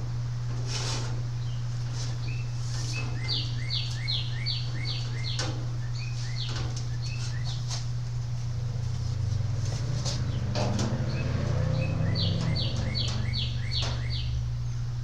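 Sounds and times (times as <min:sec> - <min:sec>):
steady low hum: 0:00.0 - 0:15.0
small bird chirping: 0:02.2 - 0:07.8, 0:10.2 - 0:14.8.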